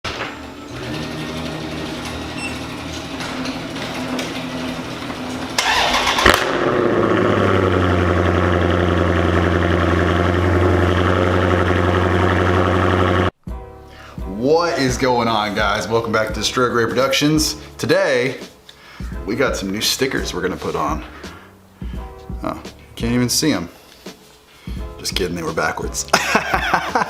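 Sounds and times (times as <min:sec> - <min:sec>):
car engine starting and idling: 0:00.1 - 0:13.4
low hum before engine start: 0:00.7 - 0:13.4.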